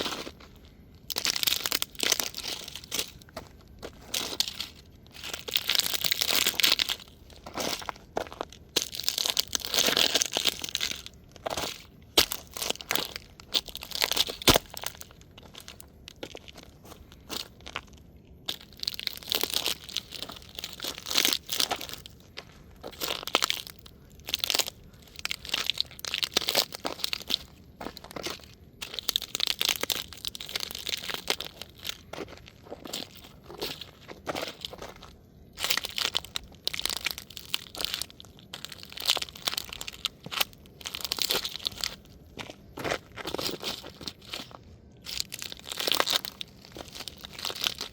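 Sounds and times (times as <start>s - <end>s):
plastic toy crunching and cracking: 1.0s - 42.3s, 42.9s - 47.9s.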